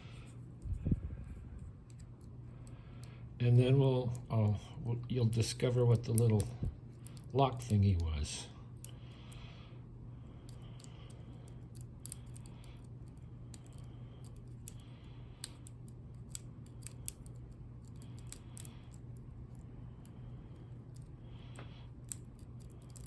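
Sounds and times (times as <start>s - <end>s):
steady low hum: 0.0s - 23.0s
lock pick clicking in padlock: 15.4s - 19.0s.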